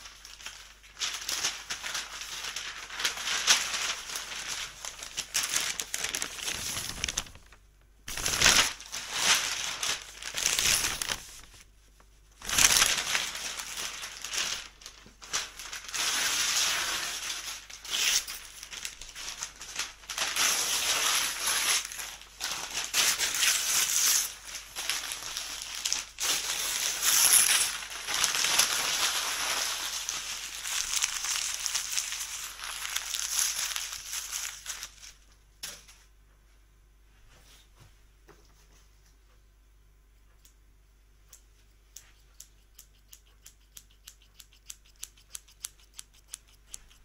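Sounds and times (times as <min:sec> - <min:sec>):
crinkling crumpling noise: 0:00.0 - 0:36.2.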